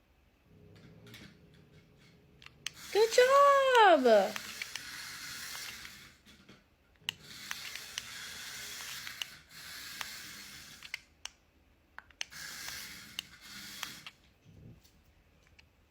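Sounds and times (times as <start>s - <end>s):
toy mouse whirring scrape: 0.8s - 11.3s, 12.1s - 14.8s
sharp clicks: 2.4s - 6.0s, 7.0s - 11.4s, 12.0s - 14.2s.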